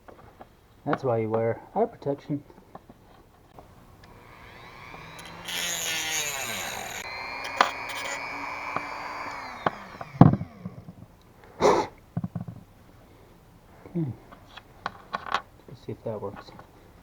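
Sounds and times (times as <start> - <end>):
rotary tool grinding: 3.6 - 11.0.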